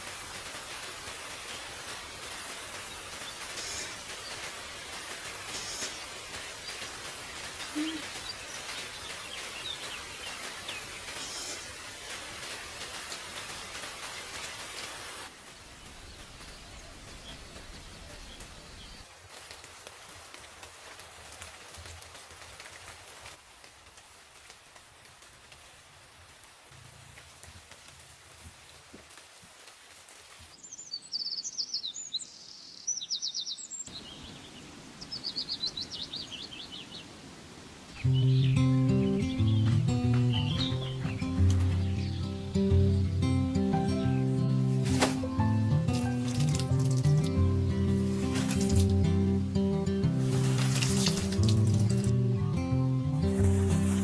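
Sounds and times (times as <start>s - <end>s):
rain falling: 0.0s - 31.2s, 33.9s - 54.0s
background hiss: 0.0s - 54.0s
small birds singing: 2.4s - 14.9s, 15.7s - 19.1s, 30.5s - 37.3s, 37.9s - 54.0s.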